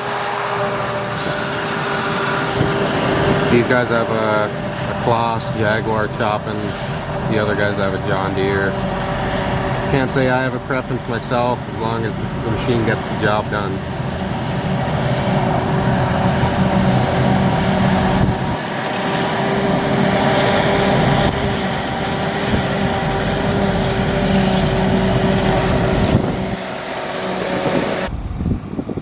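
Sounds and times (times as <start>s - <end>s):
wind noise on microphone: 0.0s - 13.2s, 13.8s - 29.0s
forage harvester engine drone: 0.0s - 29.0s.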